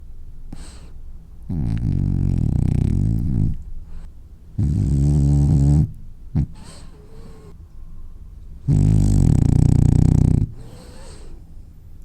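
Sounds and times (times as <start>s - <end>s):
dog snoring: 0.5s - 7.6s, 8.6s - 11.4s.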